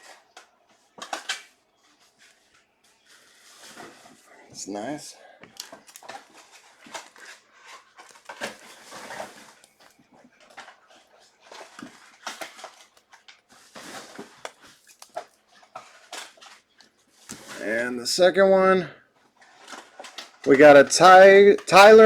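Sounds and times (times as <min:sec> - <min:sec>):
cards sliding and rustling: 0:10.6 - 0:17.9.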